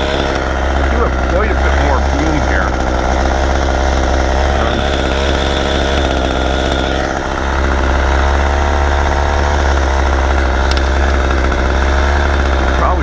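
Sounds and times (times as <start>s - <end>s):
truck engine running: 0.0s - 13.0s.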